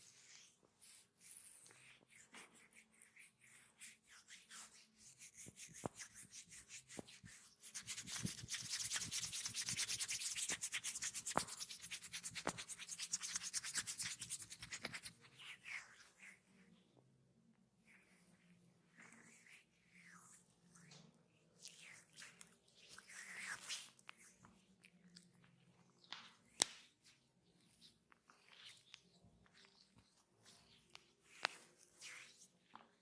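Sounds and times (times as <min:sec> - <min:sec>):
hands rubbing over skin: 0:00.2 - 0:16.4, 0:26.1 - 0:32.9.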